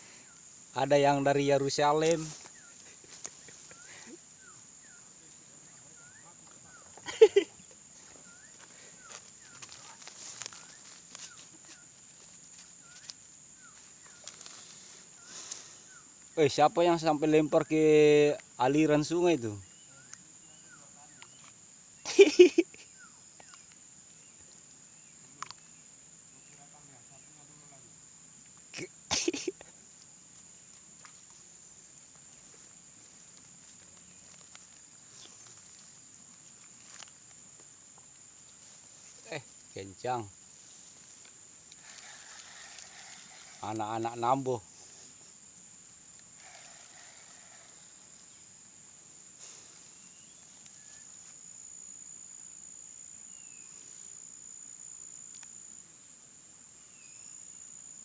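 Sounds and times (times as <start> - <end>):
high-pitched insect drone: 0.0 - 58.0
soft hiss: 0.0 - 58.0
faint ticks: 41.1 - 43.6, 46.1 - 48.0, 55.2 - 55.6.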